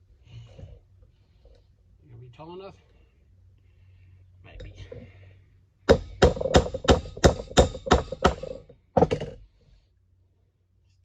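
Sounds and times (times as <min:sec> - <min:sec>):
hammer striking metal drift: 0:05.9 - 0:09.3.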